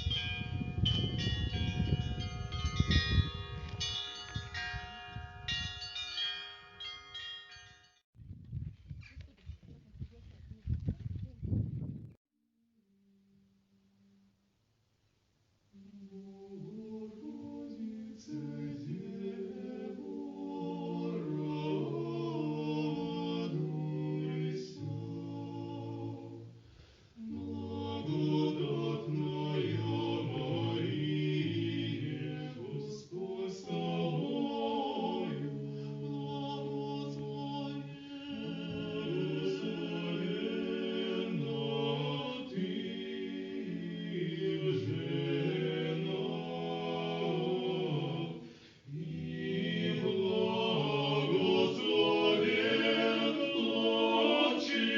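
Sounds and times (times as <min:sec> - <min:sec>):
unaccompanied choir singing: 0:15.8 - 0:26.6, 0:27.2 - 0:54.9.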